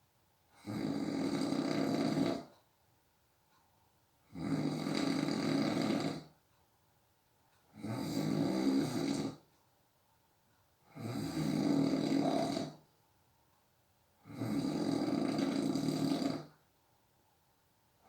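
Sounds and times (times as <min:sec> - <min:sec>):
person snoring: 0:00.6 - 0:02.5, 0:04.3 - 0:06.3, 0:07.8 - 0:09.4, 0:10.9 - 0:12.8, 0:14.2 - 0:16.5.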